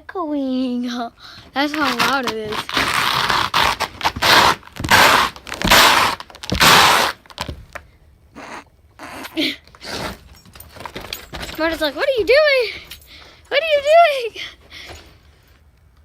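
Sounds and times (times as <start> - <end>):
crunching scrapes on frozen crust: 1.6 - 7.6.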